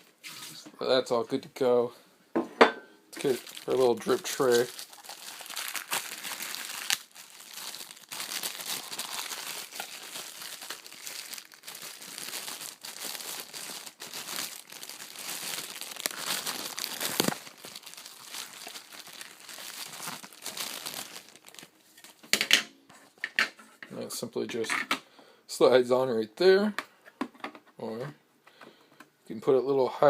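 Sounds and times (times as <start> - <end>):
plastic packaging crinkling and tearing: 3.2 - 22.2.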